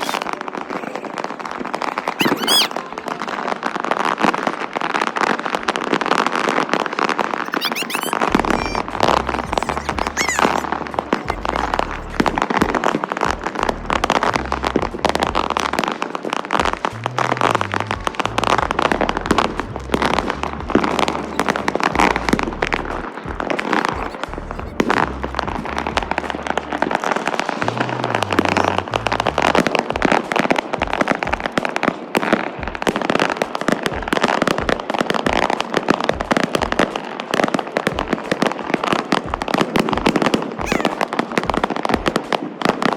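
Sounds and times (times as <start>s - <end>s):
firework whistles: 0.0s - 14.4s
fireworks crackling and popping: 0.0s - 42.9s
music with bass line: 8.2s - 15.8s, 16.6s - 31.6s.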